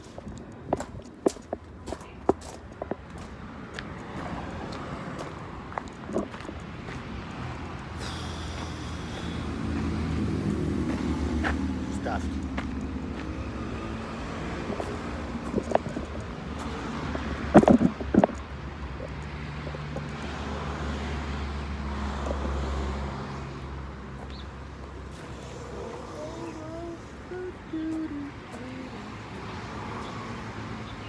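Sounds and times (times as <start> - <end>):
vehicle engine running: 0.0 - 31.0.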